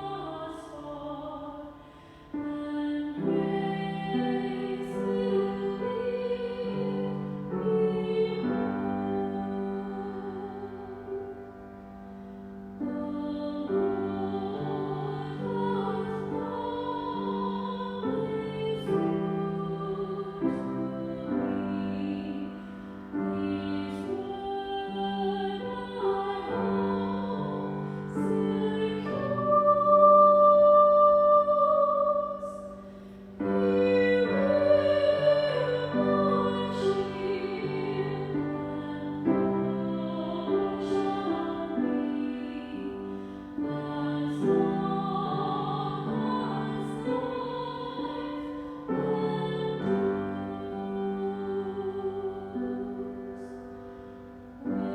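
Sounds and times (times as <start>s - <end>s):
piano accompaniment: 0.0s - 54.9s
solo melody of sustained notes: 0.0s - 54.9s.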